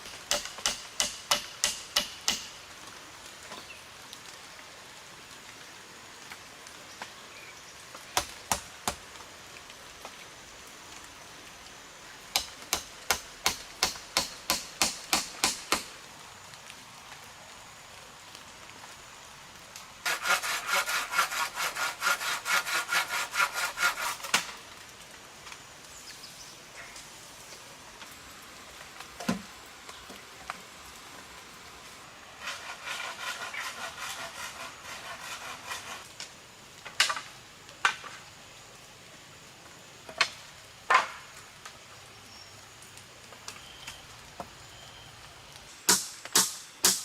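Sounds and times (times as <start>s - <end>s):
hand saw cutting wood: 20.0s - 24.5s, 32.4s - 36.1s.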